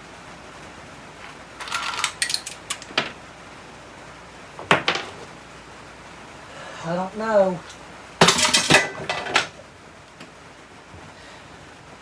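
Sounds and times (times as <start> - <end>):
metal objects clinking and clattering: 1.6 - 3.2, 4.6 - 5.3, 8.2 - 9.6.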